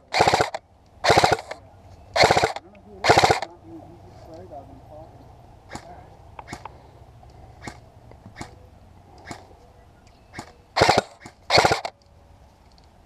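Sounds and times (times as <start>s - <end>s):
airsoft gun rapid-fire bursts: 0.0s - 1.6s, 2.2s - 3.5s, 10.8s - 11.9s
airsoft gun single shots: 0.1s - 1.6s, 2.2s - 3.5s, 7.6s - 8.6s, 10.3s - 12.0s.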